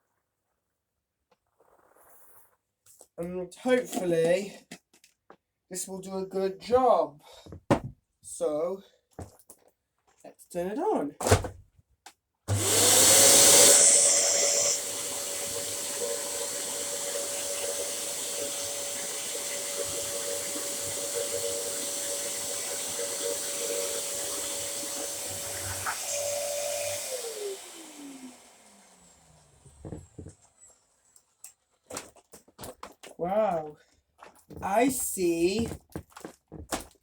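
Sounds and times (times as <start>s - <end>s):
vacuum cleaner motor: 12.5s - 31.4s.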